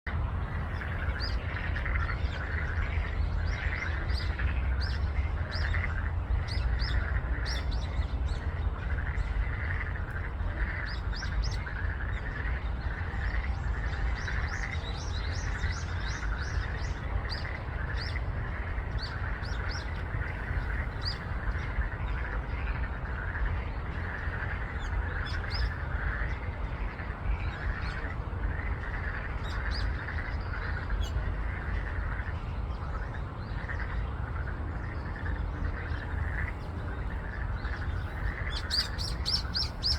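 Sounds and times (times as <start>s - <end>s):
constant low rumble: 0.1s - 39.9s
frogs croaking: 0.2s - 39.9s
birds chirping: 10.6s - 22.2s, 35.0s - 39.9s.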